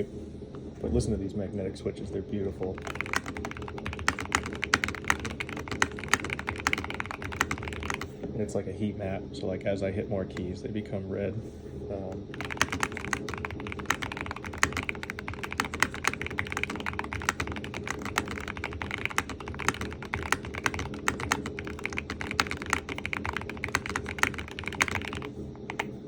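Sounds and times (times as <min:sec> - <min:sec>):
fast keyboard typing: 0:02.6 - 0:08.1, 0:12.1 - 0:25.9.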